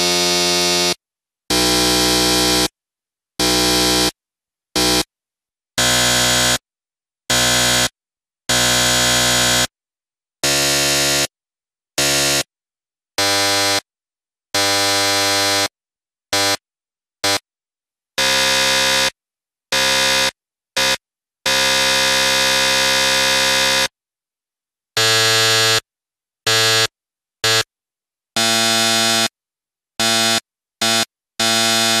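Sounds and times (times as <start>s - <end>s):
harsh electronic buzzers: 0.0s - 2.7s, 3.4s - 4.2s, 4.8s - 5.1s, 5.8s - 6.6s, 7.3s - 9.7s, 10.4s - 11.4s, 12.0s - 12.5s, 13.2s - 13.9s, 14.6s - 15.7s, 16.3s - 16.6s, 17.2s - 17.4s, 18.2s - 24.0s, 25.0s - 27.7s, 28.4s - 29.4s, 30.0s - 32.0s.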